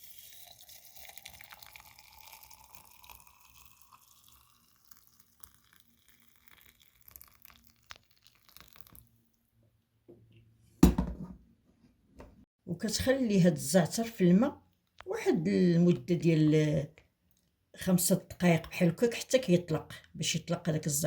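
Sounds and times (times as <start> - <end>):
water pouring into a vessel: 0.0 - 9.1
loud knock: 10.8 - 11.4.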